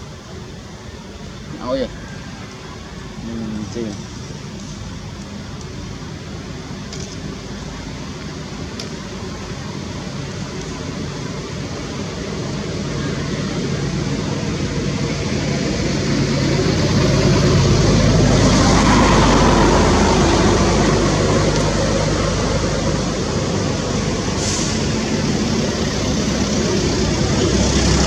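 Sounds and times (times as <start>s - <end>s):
vehicle engine passing: 15.0s - 28.0s.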